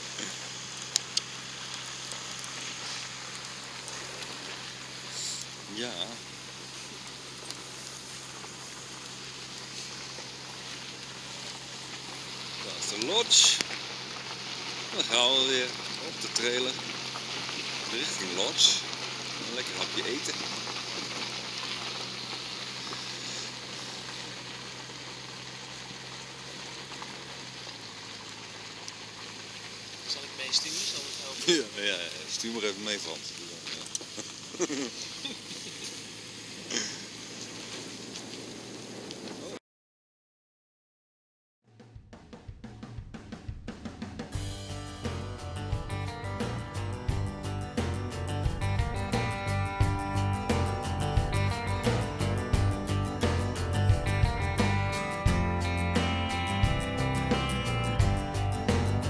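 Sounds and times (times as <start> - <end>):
steady hissing noise: 0.0 - 39.6
low motor hum: 15.7 - 30.4, 44.4 - 59.0.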